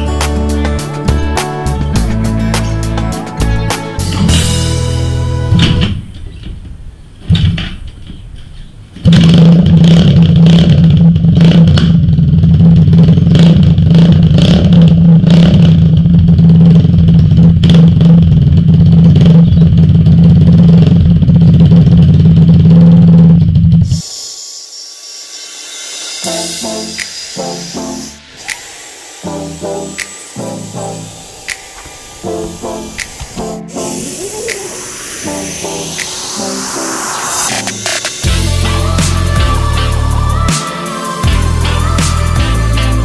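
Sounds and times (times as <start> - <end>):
background music: 0.0 - 6.0, 26.2 - 28.6, 29.2 - 43.0
dirt bike engine running: 9.2 - 24.0.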